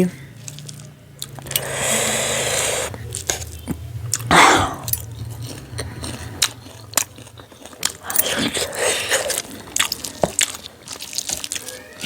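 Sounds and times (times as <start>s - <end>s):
steady low hum: 0.0s - 11.0s
chewing with wet mouth clicks: 0.4s - 12.0s.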